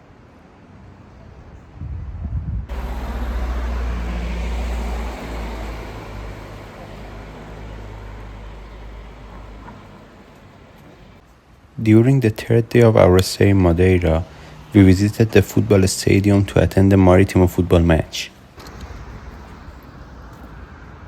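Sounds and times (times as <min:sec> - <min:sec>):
vehicle engine running: 0:02.7 - 0:11.2, 0:12.9 - 0:21.0
road noise: 0:02.7 - 0:21.0.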